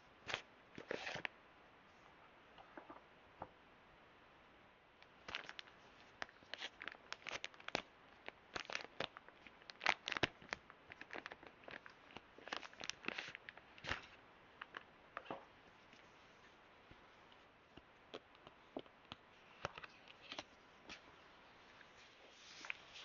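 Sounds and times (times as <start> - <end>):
packaging crinkling and tearing: 5.2 - 14.8.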